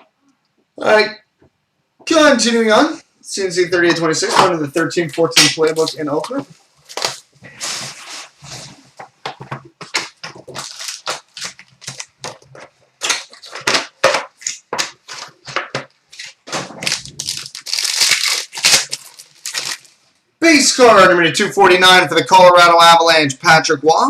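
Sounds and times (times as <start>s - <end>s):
packaging being torn and crinkled: 9.9s - 15.4s, 16.2s - 20.0s.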